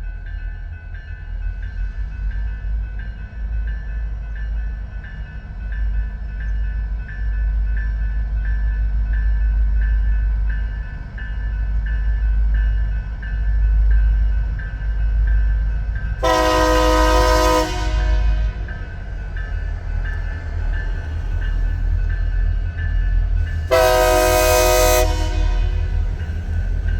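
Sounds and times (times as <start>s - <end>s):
low rumble of train: 0.0s - 26.9s
railroad crossing bell ringing: 0.0s - 26.9s
locomotive horn blast: 16.2s - 18.8s, 23.7s - 26.2s.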